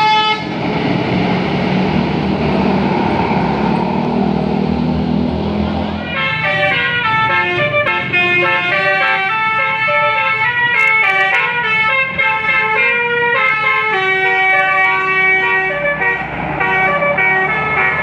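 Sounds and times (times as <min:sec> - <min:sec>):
air horn playing a melody: 0:00.0 - 0:00.5, 0:06.0 - 0:18.0.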